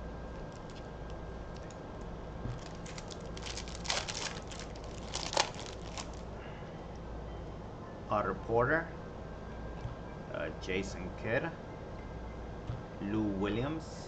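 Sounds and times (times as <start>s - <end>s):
plastic wrapper crinkling and tearing: 2.5s - 6.3s.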